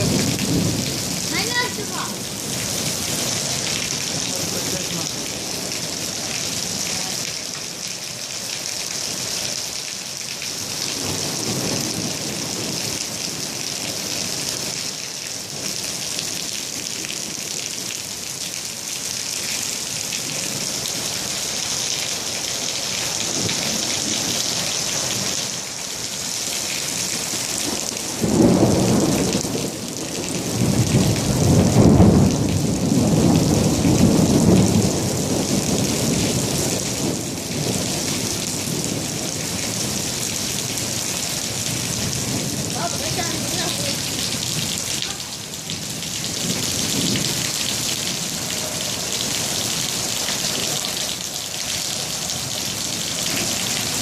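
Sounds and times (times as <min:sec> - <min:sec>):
deep rumble of thunder: 0:00.0 - 0:01.3, 0:27.7 - 0:44.9
heavy rain: 0:00.0 - 0:54.0.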